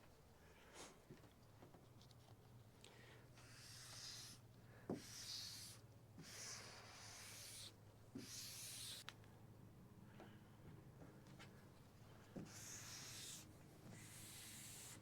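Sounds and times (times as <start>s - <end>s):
squeegee rubbing over wet vinyl: 5.0s - 9.0s, 12.4s - 15.0s.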